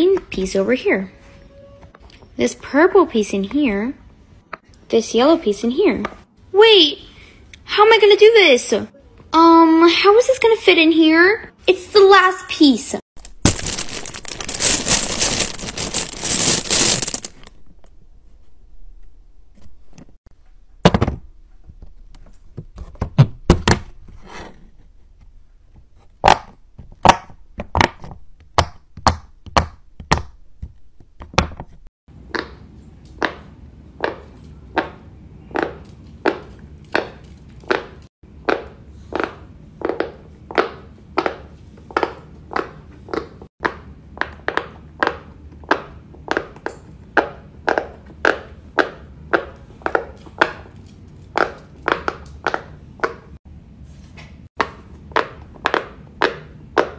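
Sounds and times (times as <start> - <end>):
plastic rustling when handled: 13.2 - 17.6.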